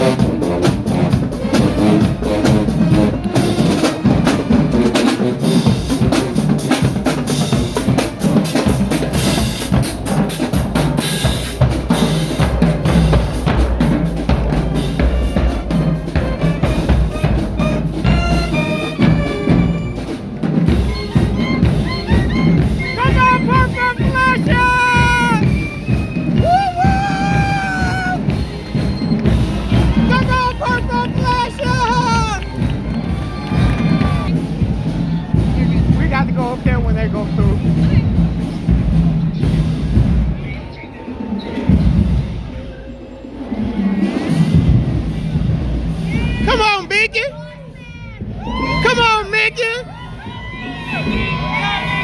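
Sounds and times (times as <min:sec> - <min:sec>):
marching drumline cadence: 0:00.0 - 0:52.0
voices sliding up and down: 0:22.4 - 0:25.6.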